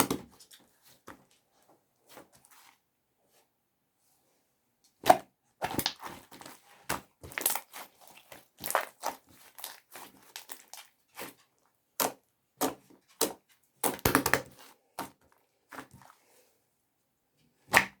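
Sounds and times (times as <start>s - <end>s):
slime squished by hand: 5.0s - 11.4s.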